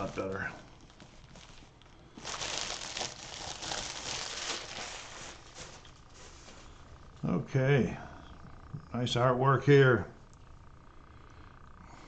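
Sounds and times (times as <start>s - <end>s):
plastic wrap crinkling: 0.0s - 6.8s.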